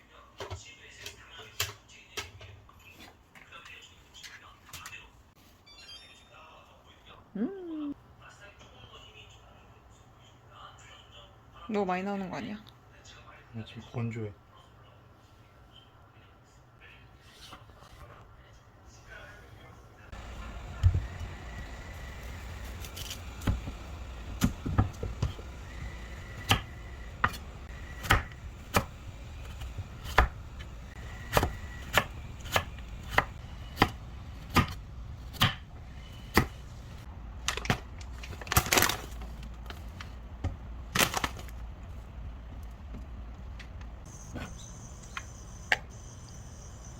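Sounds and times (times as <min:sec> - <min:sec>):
knife chopping on cutting board: 0:28.0 - 0:28.9, 0:31.3 - 0:35.6.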